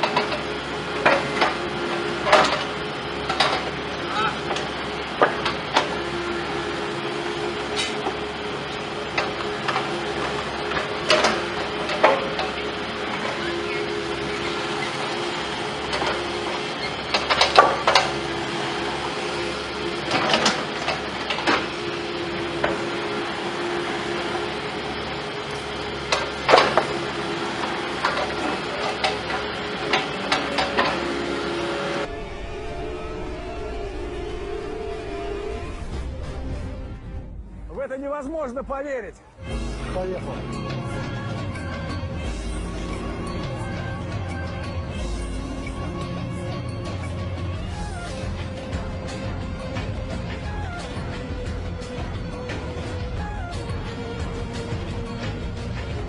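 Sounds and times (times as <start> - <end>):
metallic knocks and clanks: 0.0 - 6.2, 7.7 - 23.1
heavy machinery humming: 0.0 - 56.0.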